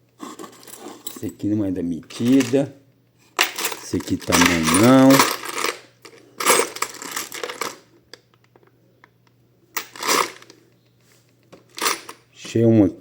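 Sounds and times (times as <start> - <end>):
metal screws clinking and rattling: 2.1 - 2.6, 3.4 - 7.8, 9.8 - 10.5, 11.7 - 12.2.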